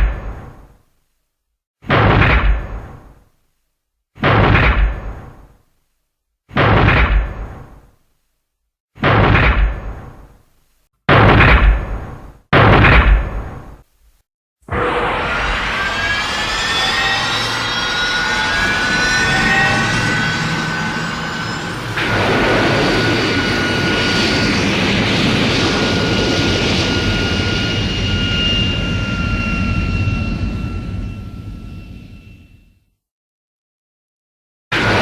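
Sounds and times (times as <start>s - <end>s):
roar with high whining tones: 14.7s - 32.2s.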